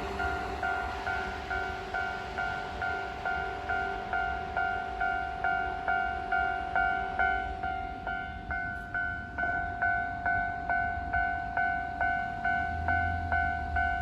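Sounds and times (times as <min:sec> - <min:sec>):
low rumble: 0:00.0 - 0:03.1
level crossing alarm bell ringing: 0:00.0 - 0:14.0.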